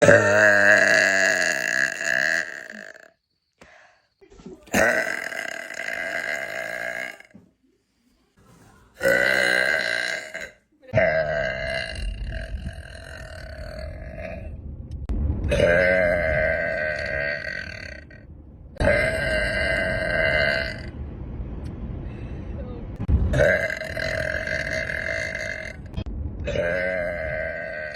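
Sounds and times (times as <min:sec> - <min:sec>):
woman burping loudly: 0:00.0 - 0:03.2, 0:04.7 - 0:07.4, 0:09.0 - 0:14.4, 0:23.4 - 0:25.9.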